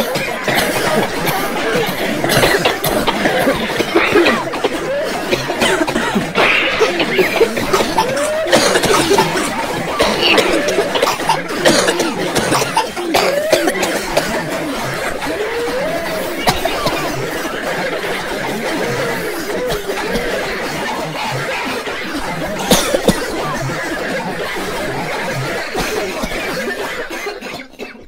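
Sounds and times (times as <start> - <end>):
overlapping voices: 0.0 - 28.0
people chuckling: 0.0 - 28.0
people coughing: 0.0 - 28.0.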